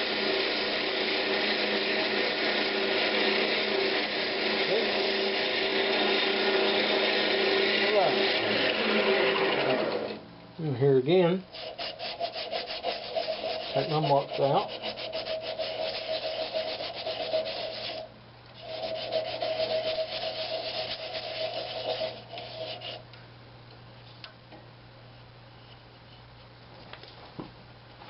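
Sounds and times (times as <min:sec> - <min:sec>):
lathe humming: 0:00.0 - 0:10.2, 0:11.6 - 0:18.0, 0:18.6 - 0:23.0
sandpaper rasping on spinning wood: 0:00.0 - 0:10.2, 0:11.5 - 0:23.0.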